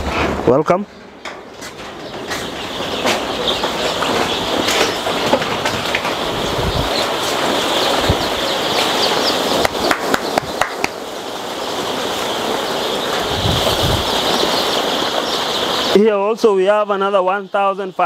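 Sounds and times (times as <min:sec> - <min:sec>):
chicks peeping: 0:00.0 - 0:18.0
sharp clicks and knocks: 0:01.2 - 0:06.2.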